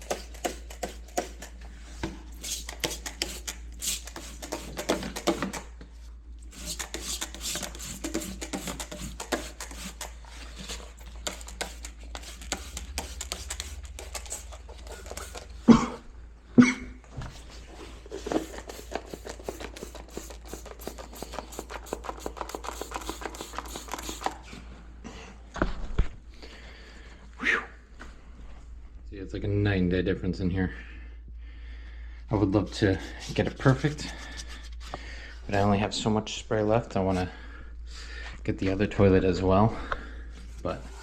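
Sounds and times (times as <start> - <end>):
scrubbing inside toilet tank: 6.5 - 15.8.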